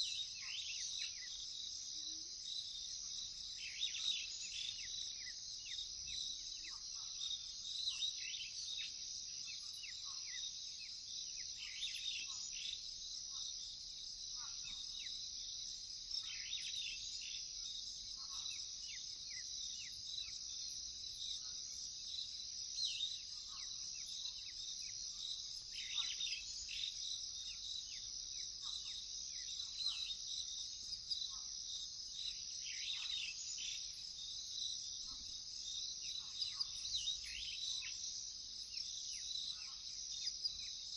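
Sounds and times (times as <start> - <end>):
crickets chirping: 0.0 - 40.9
bird chirps: 36.0 - 40.9.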